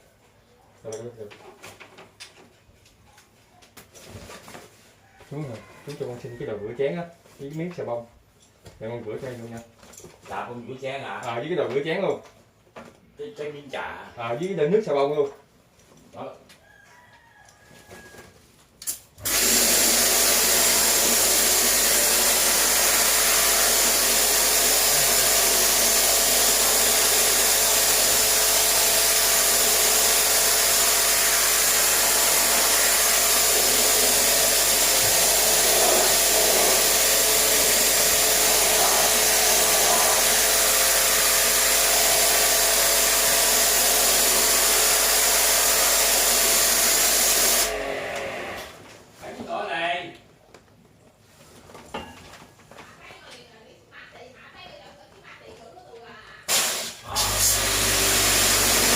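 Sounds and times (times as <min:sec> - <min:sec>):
pressure washer motor humming: 0:19.2 - 0:48.7, 0:56.5 - 0:58.9.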